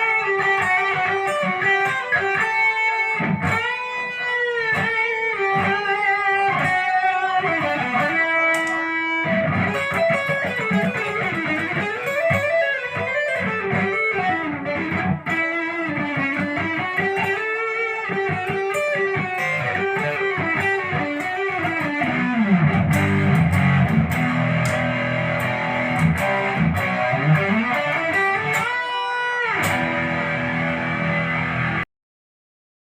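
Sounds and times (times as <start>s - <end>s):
electric guitar with string bends: 0.0s - 31.8s.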